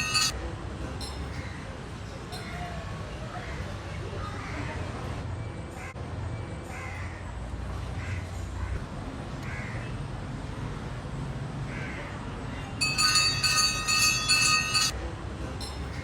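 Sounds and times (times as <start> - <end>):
metal bell rung rapidly: 0.0 - 0.4, 12.8 - 15.0
crows cawing: 8.0 - 8.8, 9.4 - 9.9, 11.7 - 12.1.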